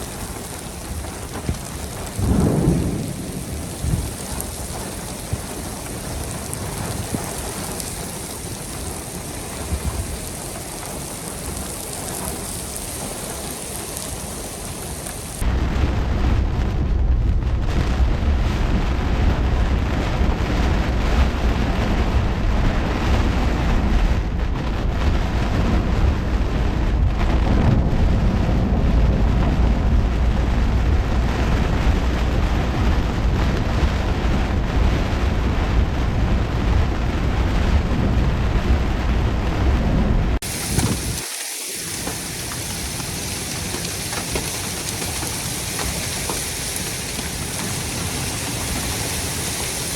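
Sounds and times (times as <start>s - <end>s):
heavy rain hiss: 0.0s - 15.4s, 40.3s - 49.9s
storm wind and rain rushing: 0.0s - 49.9s.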